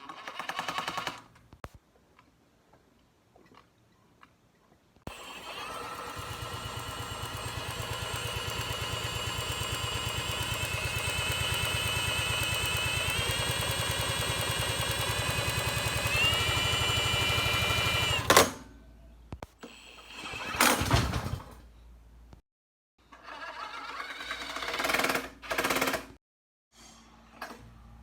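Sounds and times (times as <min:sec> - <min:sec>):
small gasoline engine running: 0:05.1 - 0:18.4.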